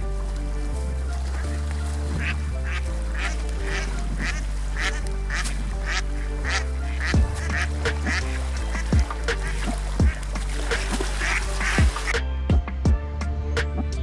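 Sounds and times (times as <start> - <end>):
music with held low notes: 0.0 - 14.0
ducks quacking: 2.2 - 12.3.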